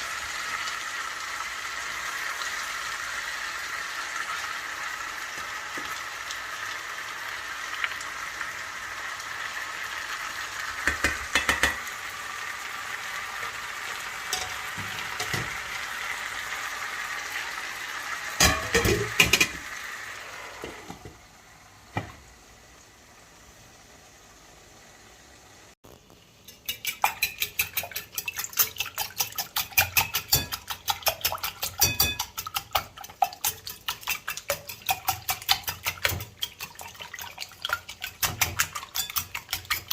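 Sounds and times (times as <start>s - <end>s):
food sizzling in a pot: 0.0s - 39.9s
utensil knocking against pot: 10.8s - 11.8s, 26.8s - 36.8s.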